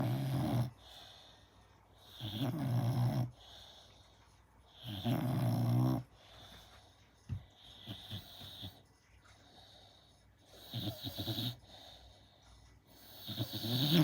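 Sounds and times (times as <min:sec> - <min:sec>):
puppy snoring: 0:00.0 - 0:01.2, 0:02.0 - 0:03.8, 0:04.7 - 0:06.3, 0:07.4 - 0:08.9, 0:10.4 - 0:12.1, 0:12.9 - 0:14.0
dog breathing quietly: 0:00.0 - 0:14.0.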